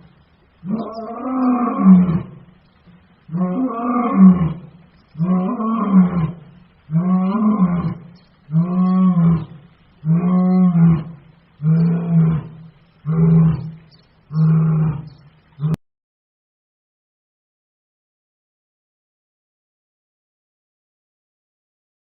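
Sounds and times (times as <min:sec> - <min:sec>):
lion roaring: 0:00.6 - 0:02.5, 0:03.3 - 0:15.8.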